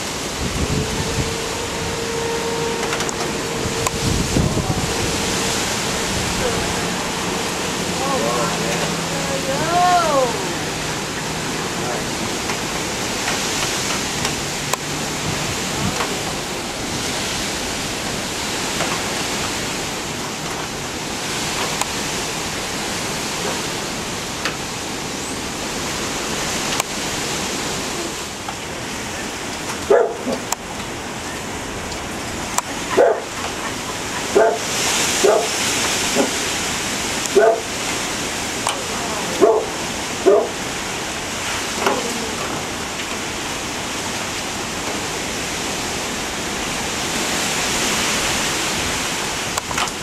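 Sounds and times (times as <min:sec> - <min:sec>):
hurricane wind: 0:00.0 - 0:50.0
rain: 0:00.0 - 0:50.0
dog barking: 0:29.9 - 0:30.4, 0:32.9 - 0:35.6, 0:37.3 - 0:37.7, 0:39.4 - 0:40.6.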